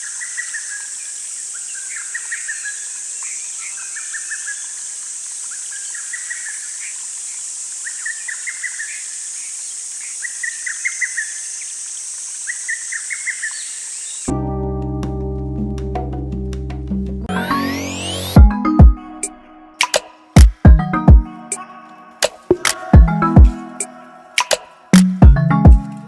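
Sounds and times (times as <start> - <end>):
insects droning: 0.0 - 14.3, 21.2 - 26.0
bird chirping: 12.4 - 14.3
music: 14.3 - 26.0.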